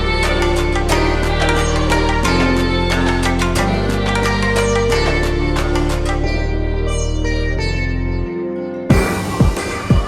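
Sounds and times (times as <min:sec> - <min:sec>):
sustained bass notes: 0:00.0 - 0:10.0.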